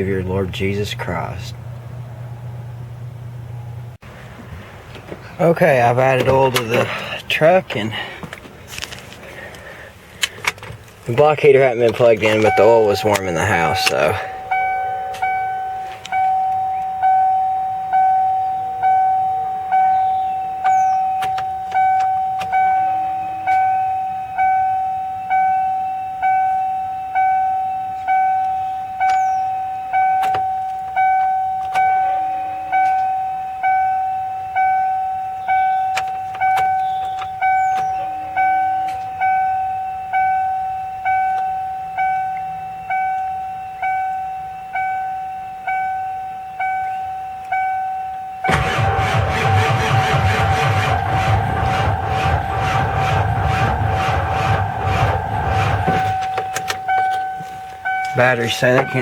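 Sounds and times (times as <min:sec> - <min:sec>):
electronic warning chime dinging: 0:12.2 - 0:59.0.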